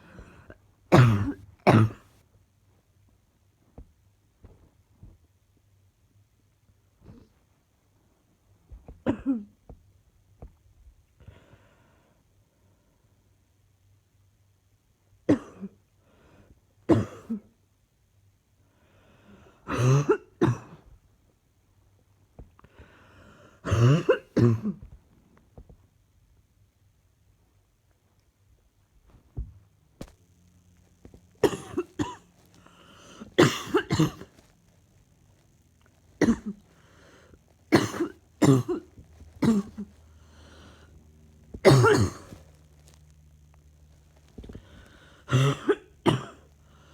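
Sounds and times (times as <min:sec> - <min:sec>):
woman coughing: 0:00.9 - 0:02.0, 0:09.0 - 0:09.6, 0:15.3 - 0:15.8, 0:16.9 - 0:17.5, 0:19.7 - 0:20.8, 0:23.6 - 0:24.8, 0:31.4 - 0:32.2, 0:33.1 - 0:34.4, 0:36.2 - 0:36.6, 0:37.7 - 0:38.8, 0:39.4 - 0:39.9, 0:41.6 - 0:42.4, 0:45.3 - 0:46.4
faint breaths: 0:11.2 - 0:13.2, 0:16.0 - 0:16.6, 0:18.6 - 0:19.7, 0:22.6 - 0:23.7, 0:31.3 - 0:33.4, 0:35.8 - 0:37.6, 0:38.9 - 0:41.6, 0:44.0 - 0:45.4, 0:46.5 - 0:46.9.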